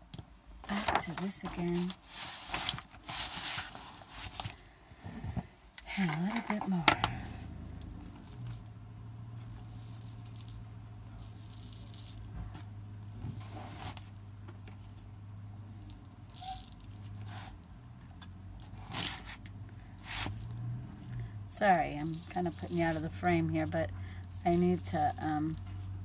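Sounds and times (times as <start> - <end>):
hands rustling craft pieces on paper: 0.6 - 4.7, 15.8 - 20.8, 21.6 - 26.0
steady low hum: 2.7 - 26.0.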